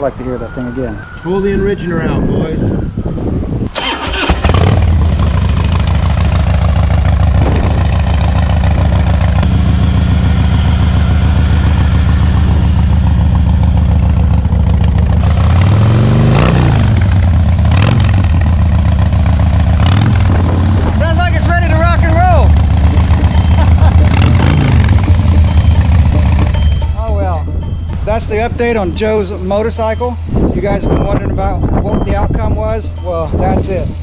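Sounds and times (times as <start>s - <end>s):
motorcycle engine starting: 3.7s - 26.9s
motorcycle engine revving: 3.7s - 27.0s
motorcycle engine idling: 3.8s - 15.7s, 16.9s - 30.3s.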